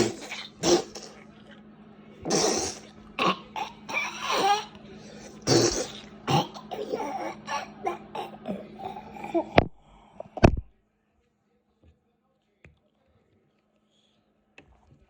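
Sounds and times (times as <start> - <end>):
child coughing and choking: 0.0 - 1.2, 2.2 - 9.8
child strained gasp: 3.6 - 9.7.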